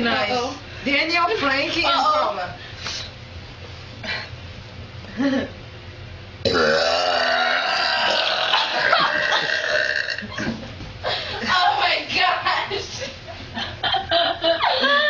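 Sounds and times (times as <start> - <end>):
woman belching: 6.4 - 10.4.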